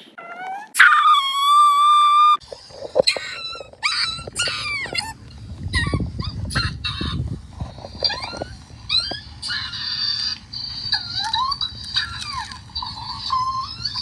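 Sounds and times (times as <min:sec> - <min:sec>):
squeaky cartoon voices: 0:00.0 - 0:02.4.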